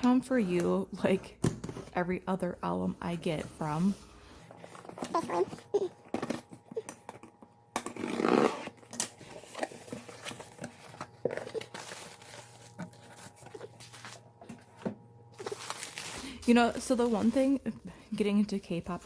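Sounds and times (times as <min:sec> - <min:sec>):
packaging crinkling: 0:08.9 - 0:14.7, 0:15.4 - 0:17.4
package tearing open: 0:15.4 - 0:16.2.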